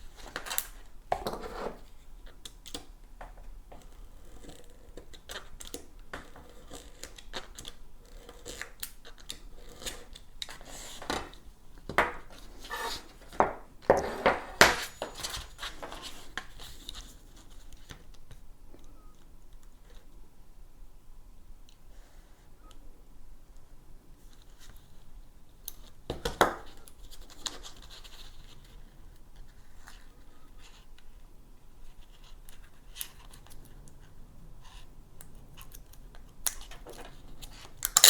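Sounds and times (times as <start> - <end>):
rustling scrapes and knocks: 1.1 - 2.0, 12.3 - 17.7
velcro being handled: 36.6 - 38.0.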